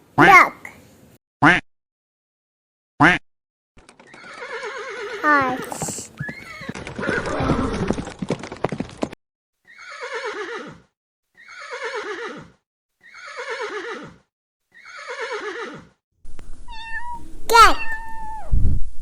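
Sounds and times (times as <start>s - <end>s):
hooves clip-clopping: 3.8s - 9.2s
horse whinnying: 4.0s - 8.1s, 9.7s - 16.0s.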